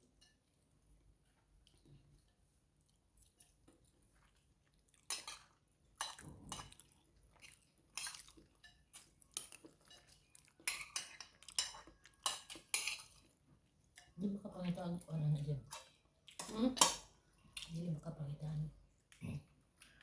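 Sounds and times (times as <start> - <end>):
cutlery clinking against dishes: 5.0 - 6.8, 8.0 - 13.3, 15.7 - 17.2.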